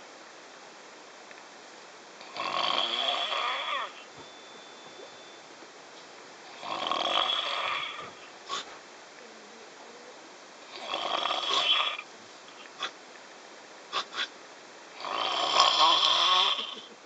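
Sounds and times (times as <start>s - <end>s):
person snoring heavily: 2.2s - 4.1s, 6.4s - 8.7s, 10.7s - 12.1s, 15.0s - 16.9s.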